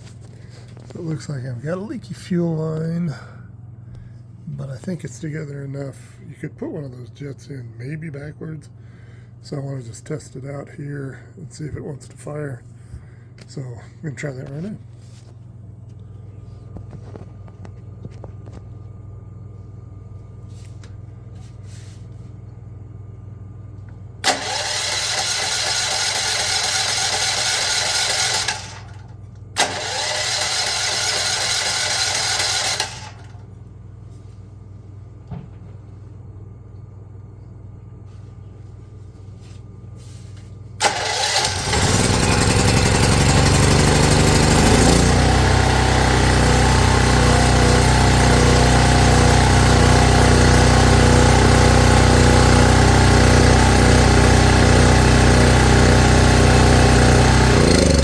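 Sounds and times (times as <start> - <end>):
electric starter cranking engine: 24.2 - 33.5, 40.8 - 58.0
generator engine running: 24.2 - 33.7, 40.8 - 58.0.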